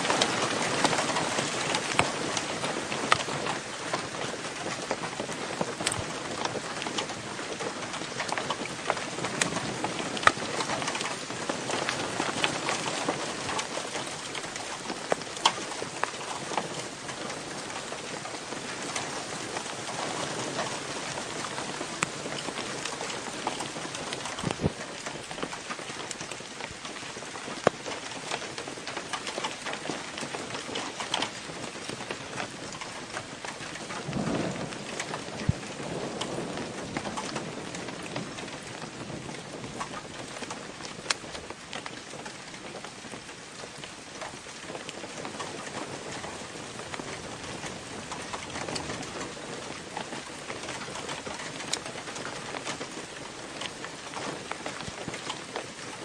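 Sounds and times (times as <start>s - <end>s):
steady rain: 0.0s - 56.0s
low rumble of thunder: 32.7s - 41.1s.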